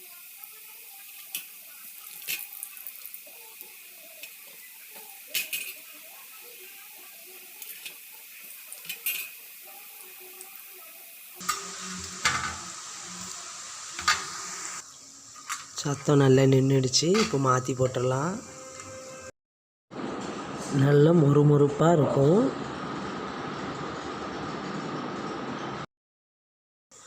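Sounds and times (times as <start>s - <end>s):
deep-frying sizzle in oil: 0.0s - 19.2s
metal utensils clinking on pan: 1.2s - 3.1s, 5.0s - 6.0s, 8.7s - 9.5s, 17.1s - 17.5s.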